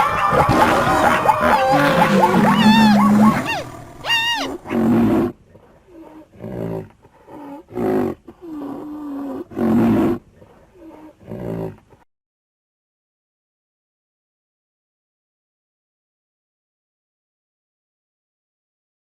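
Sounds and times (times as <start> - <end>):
big cat roaring and growling: 0.0 - 5.4, 6.0 - 10.2.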